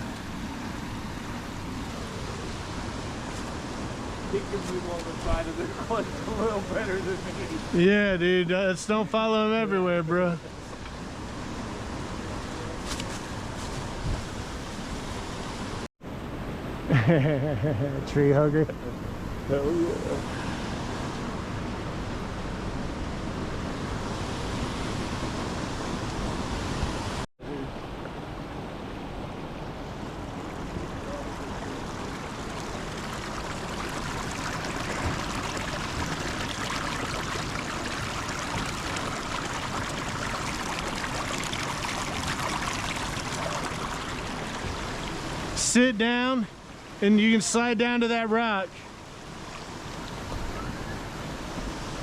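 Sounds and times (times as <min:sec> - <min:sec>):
waterfall rushing: 0:29.9 - 0:47.0.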